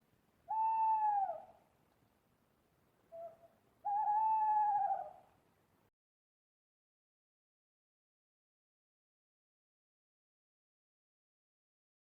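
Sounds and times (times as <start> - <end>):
owl hooting: 0.5 - 1.6, 3.1 - 5.3.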